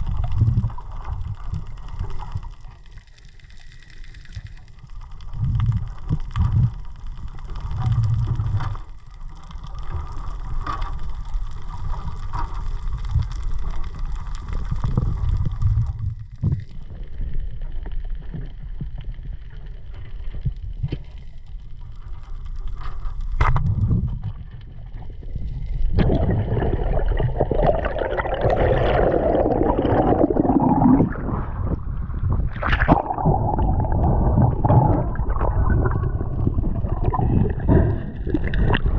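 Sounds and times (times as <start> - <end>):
underwater low rumble: 0.0 - 38.9
gurgling bubbles: 23.6 - 38.9.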